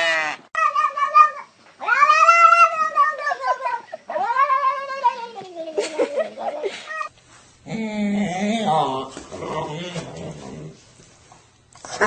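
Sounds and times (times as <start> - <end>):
cat yowling: 0.0 - 5.4.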